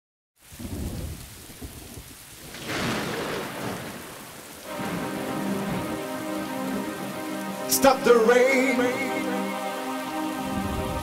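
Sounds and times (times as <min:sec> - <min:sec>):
steady rain: 0:00.4 - 0:11.0
thunder rumbling: 0:00.5 - 0:07.6, 0:10.5 - 0:11.0
thunder clap: 0:00.6 - 0:06.1
music: 0:04.6 - 0:11.0.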